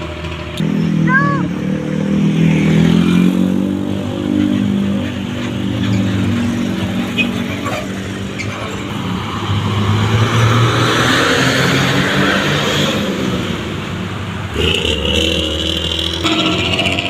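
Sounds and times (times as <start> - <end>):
old bus engine running: 0.0 - 2.0, 13.8 - 17.0.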